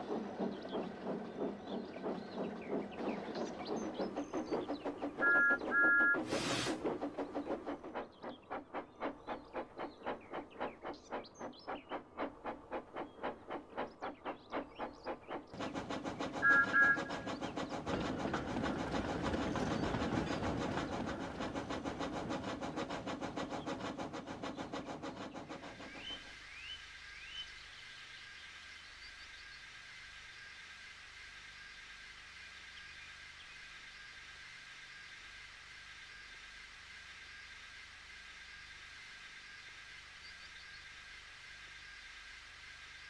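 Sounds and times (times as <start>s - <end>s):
steam locomotive chuffing: 0.0s - 27.6s
steam whistle toot: 16.4s - 17.2s.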